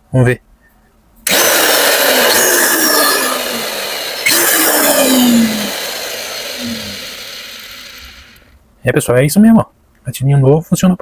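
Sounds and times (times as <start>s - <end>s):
saw motor running and winding down: 1.3s - 8.6s.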